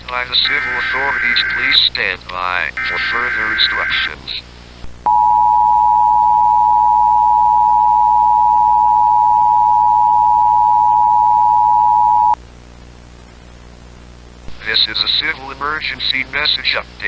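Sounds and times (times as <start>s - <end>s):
two-tone alert signal: 0.4s - 1.9s, 2.8s - 4.1s.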